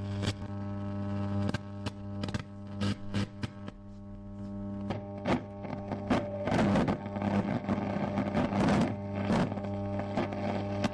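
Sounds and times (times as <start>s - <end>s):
mains hum: 0.0s - 10.9s
radio crackling: 0.0s - 10.9s
snatches of radio music: 0.0s - 10.9s
radio static bursts: 4.6s - 10.9s.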